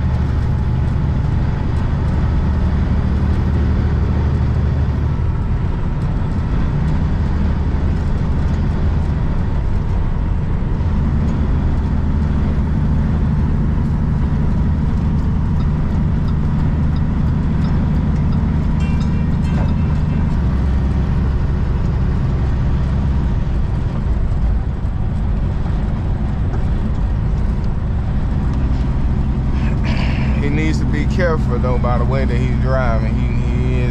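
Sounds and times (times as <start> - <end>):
diesel truck engine running: 0.0 - 33.9
road noise: 0.0 - 33.9.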